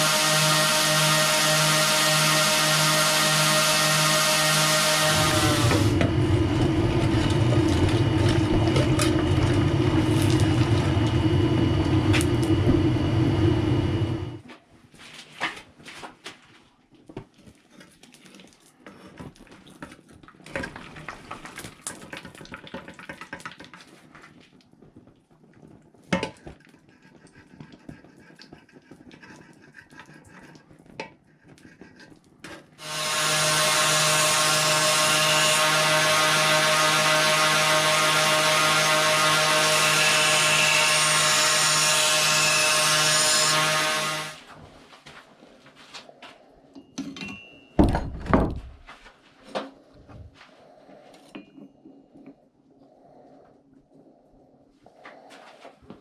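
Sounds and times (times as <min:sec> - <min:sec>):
motor humming: 0:00.0 - 0:14.4
power tool running: 0:00.0 - 0:14.4, 0:32.8 - 0:44.5.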